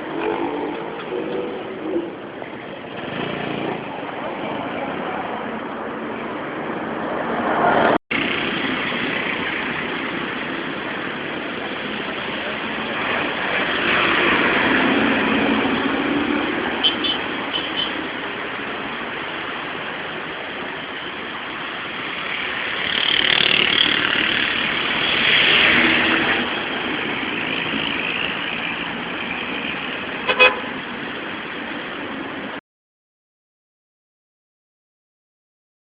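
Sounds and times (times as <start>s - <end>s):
cars passing: 0.0s - 32.6s.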